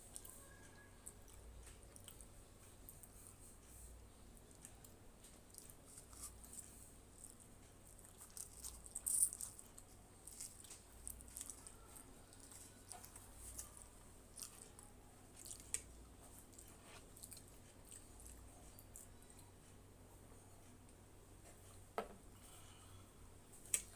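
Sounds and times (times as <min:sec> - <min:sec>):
person chewing noodles: 0:04.5 - 0:19.5.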